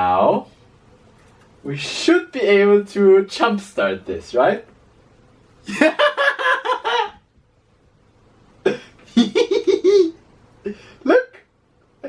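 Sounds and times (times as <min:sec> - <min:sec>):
man laughing: 0:05.6 - 0:07.2, 0:08.6 - 0:10.9.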